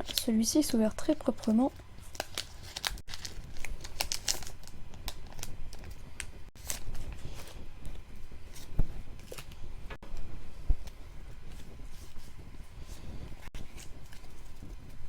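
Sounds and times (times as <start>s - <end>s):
foil wrapper crinkling: 0.0s - 9.7s.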